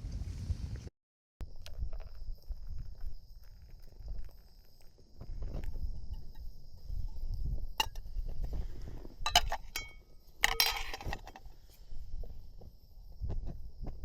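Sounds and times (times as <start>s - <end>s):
metal cookware clinking: 9.2s - 11.5s.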